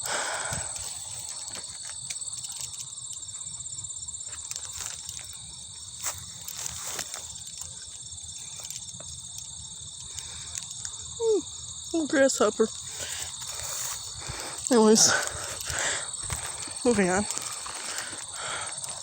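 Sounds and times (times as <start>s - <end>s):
crickets and insects trilling: 0.0s - 19.0s
footsteps on sandy path: 12.9s - 19.0s.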